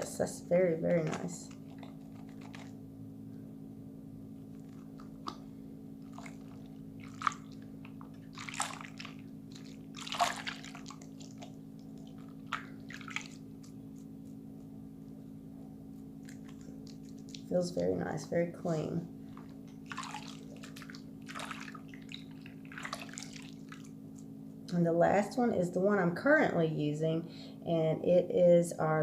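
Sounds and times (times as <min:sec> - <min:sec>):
soapy hands squishing: 0:00.0 - 0:02.8, 0:04.4 - 0:14.6, 0:16.1 - 0:18.3, 0:19.2 - 0:24.3
low hum: 0:00.0 - 0:29.0.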